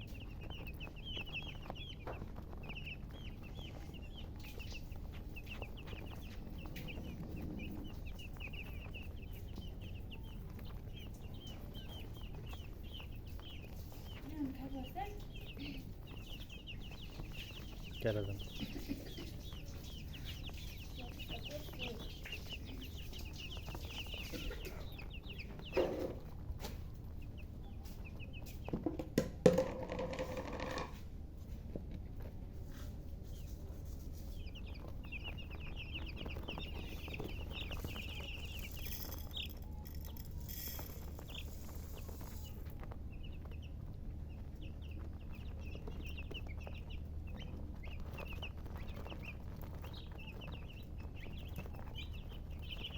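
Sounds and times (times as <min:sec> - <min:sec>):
chicks peeping: 0:00.0 - 0:52.9
knocks and thumps: 0:28.6 - 0:31.0.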